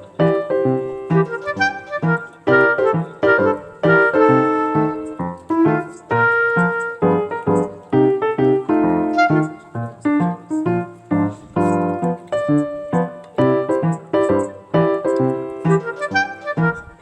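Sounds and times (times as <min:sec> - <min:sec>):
piano melody: 0:00.0 - 0:17.0.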